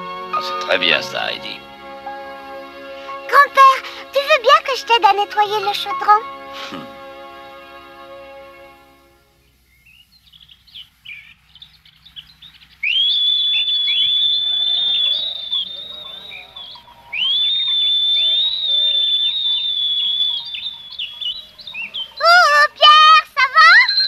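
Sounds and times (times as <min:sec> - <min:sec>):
long high whistled notes: 0:00.0 - 0:09.7, 0:12.8 - 0:24.0
small bird chirps: 0:09.4 - 0:24.0.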